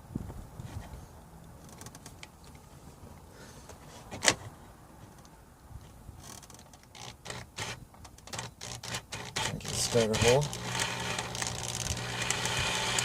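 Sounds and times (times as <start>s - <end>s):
plastic scraping rasps: 6.2s - 13.0s.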